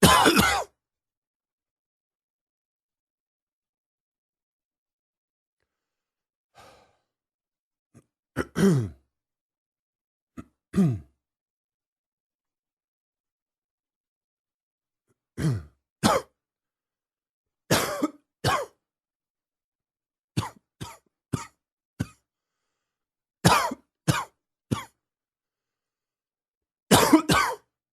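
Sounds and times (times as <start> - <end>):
man coughing: 0.0 - 0.8, 8.4 - 9.0, 10.4 - 11.1, 15.4 - 16.3, 17.7 - 18.8, 23.5 - 25.0, 26.9 - 27.7.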